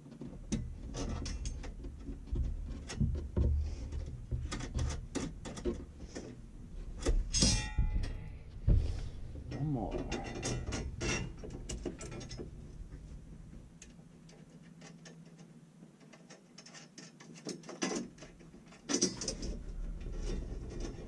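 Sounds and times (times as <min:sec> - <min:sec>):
clicks and knocks of hardware: 0:09.9 - 0:13.0.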